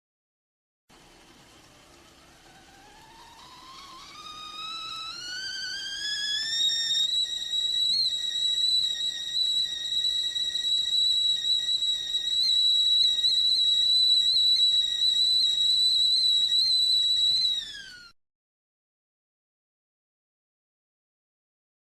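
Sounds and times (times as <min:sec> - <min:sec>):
whistling kettle: 0:00.9 - 0:18.2.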